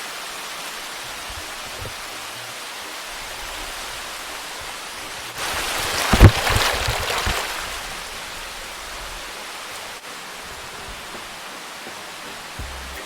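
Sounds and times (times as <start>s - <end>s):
river rushing over rocks: 0.0s - 13.0s
low thumps: 10.5s - 13.0s.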